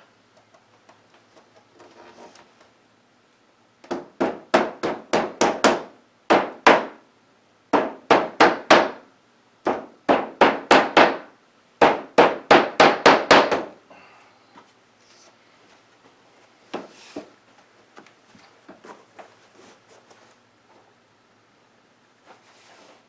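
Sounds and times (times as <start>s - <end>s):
hammer tapping on wooden frame: 3.8s - 7.0s, 7.7s - 9.0s, 9.6s - 13.8s.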